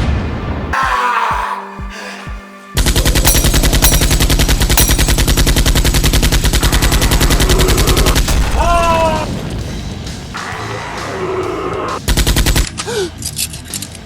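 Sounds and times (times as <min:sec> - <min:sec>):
automatic gunfire: 0:02.8 - 0:08.4.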